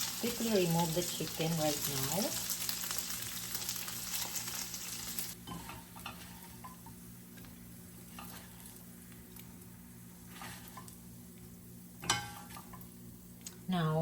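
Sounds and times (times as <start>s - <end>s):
chicken sizzling in oil: 0.0s - 5.8s.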